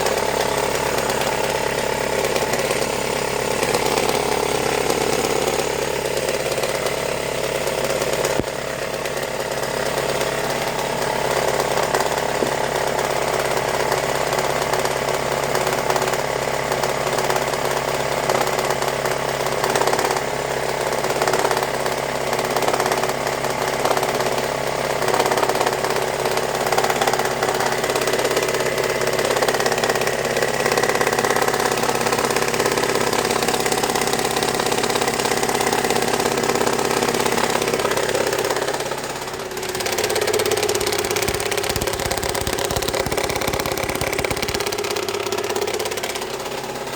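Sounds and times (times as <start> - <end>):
car engine idling with a knock: 7.8 - 10.2, 11.8 - 16.2, 29.2 - 46.8.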